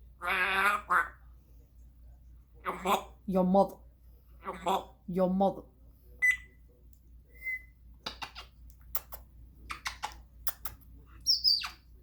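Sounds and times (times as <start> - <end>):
parrot squeaking: 0.2 - 1.2, 9.7 - 11.9
parrot whistling: 7.4 - 7.7
parrot clicking: 8.1 - 10.8.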